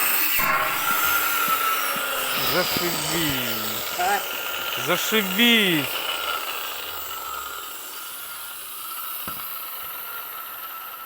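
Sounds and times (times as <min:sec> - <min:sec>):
angle grinder motor whining: 0:00.2 - 0:08.4.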